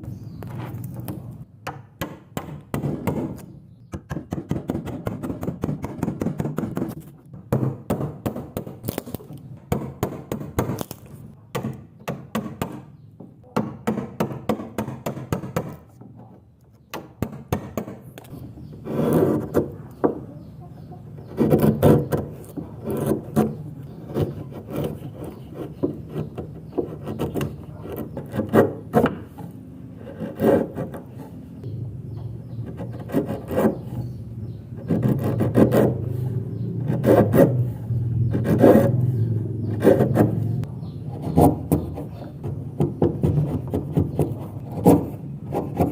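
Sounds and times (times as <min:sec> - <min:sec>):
hand tool scraping wood: 0:17.2 - 0:31.7, 0:32.4 - 0:45.9.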